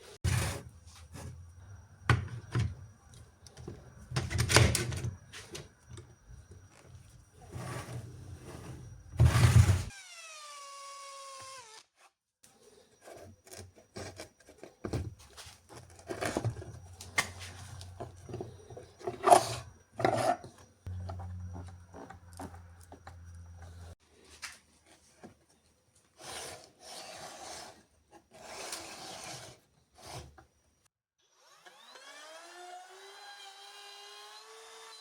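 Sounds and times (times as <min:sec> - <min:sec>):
power tool motor winding down: 0:31.2 - 0:35.0.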